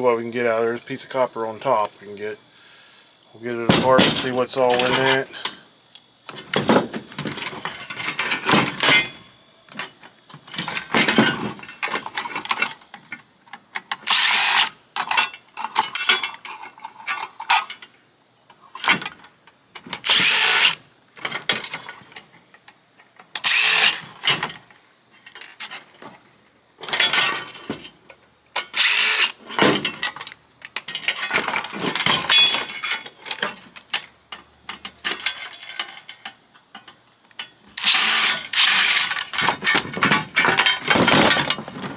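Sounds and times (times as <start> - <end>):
power drill bursts: 14.1 - 14.7, 20.0 - 20.8, 23.4 - 24.1, 28.7 - 29.4, 37.8 - 39.3.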